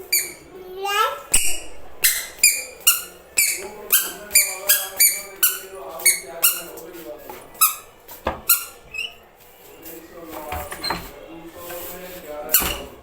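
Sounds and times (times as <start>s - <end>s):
short high-pitched squeaks: 2.0s - 6.7s.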